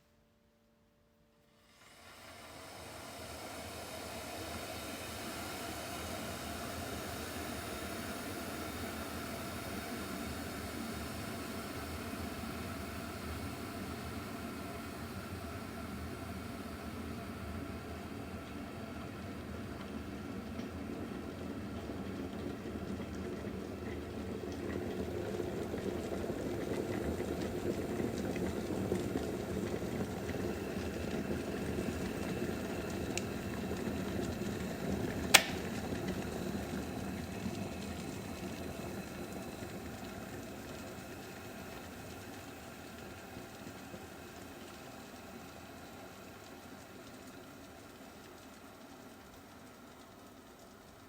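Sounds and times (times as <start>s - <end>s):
water boiling in a kettle: 1.5s - 51.0s
sharp click: 35.3s - 35.6s.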